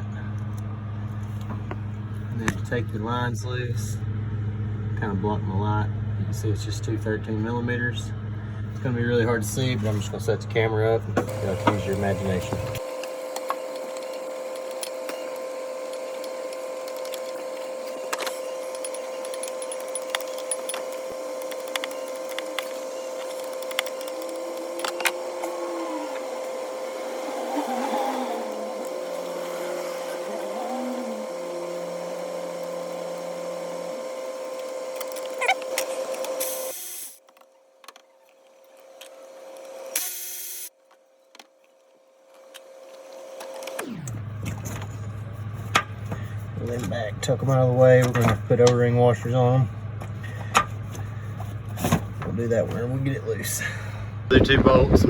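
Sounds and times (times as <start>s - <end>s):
steady electric hum: 0.0s - 37.2s, 44.1s - 55.0s
hand tools clicking on metal: 13.3s - 26.3s.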